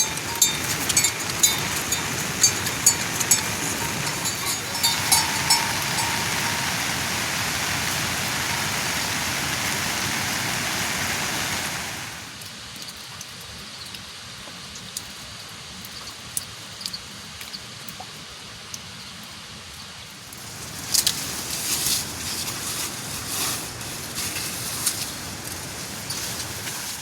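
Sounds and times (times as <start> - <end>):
clicks and crackles: 0.0 - 6.6, 20.2 - 27.0
steady rain: 0.0 - 27.0
water drips: 0.0 - 27.0.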